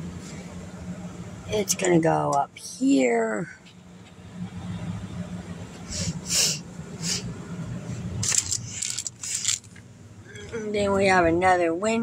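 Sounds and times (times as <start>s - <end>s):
steady low hum: 0.0s - 12.0s
toys rustling and scraping: 7.9s - 9.8s.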